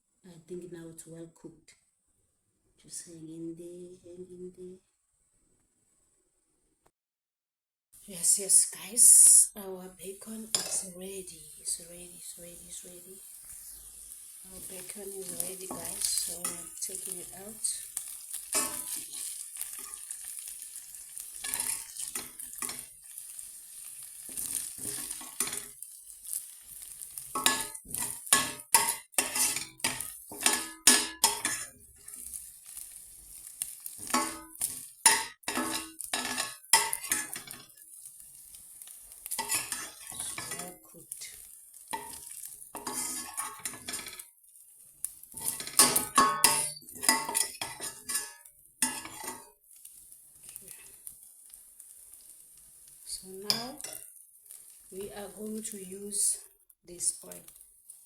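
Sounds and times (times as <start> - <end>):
bacon fat sizzling: 8.0 - 58.0
utensil scraping frying pan: 10.2 - 55.7.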